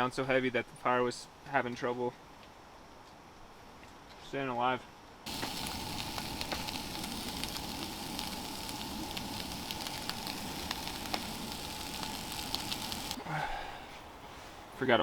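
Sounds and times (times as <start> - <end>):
food sizzling in a pan: 5.3 - 13.2.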